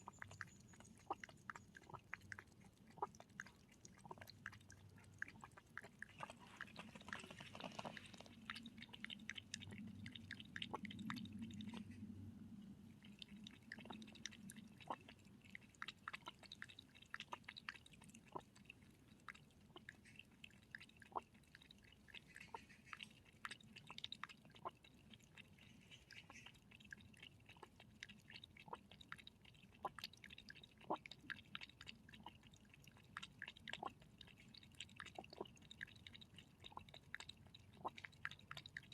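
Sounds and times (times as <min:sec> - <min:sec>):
faint low hum: 0:00.0 - 0:38.9
animal crunching dry food: 0:00.1 - 0:11.8.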